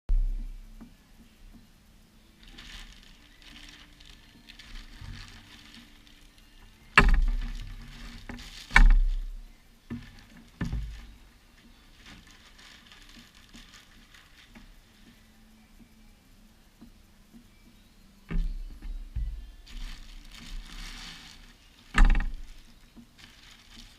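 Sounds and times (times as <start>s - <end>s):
packaging rustling: 2.4s - 15.2s, 19.6s - 23.9s.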